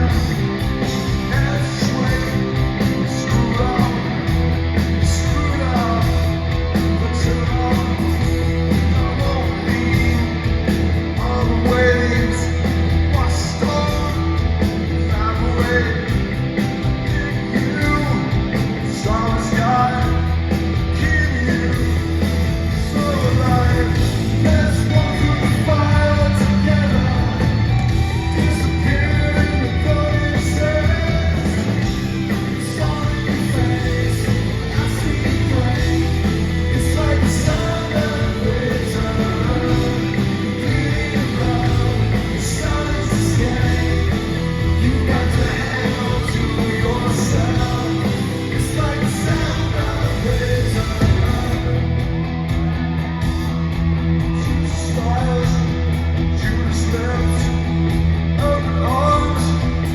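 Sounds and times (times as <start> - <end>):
male lead vocal singing: 0.0 - 52.0, 54.3 - 59.9
live rock band playing: 0.0 - 59.9.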